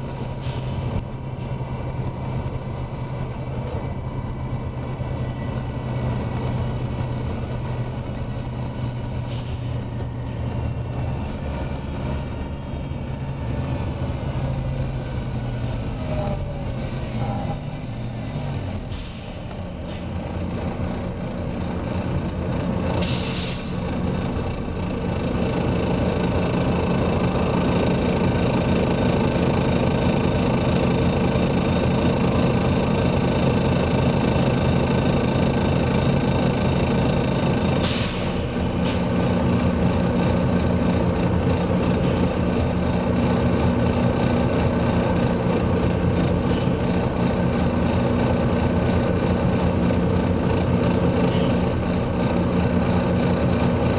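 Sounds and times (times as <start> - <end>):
bus diesel engine under load: 0.0 - 53.9
compressed air hisses: 37.8 - 39.3.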